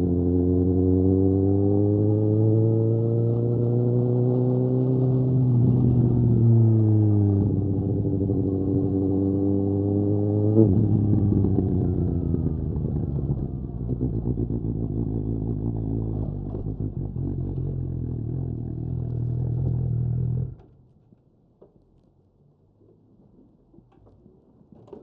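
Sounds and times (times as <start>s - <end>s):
motorcycle engine revving: 0.0s - 20.7s.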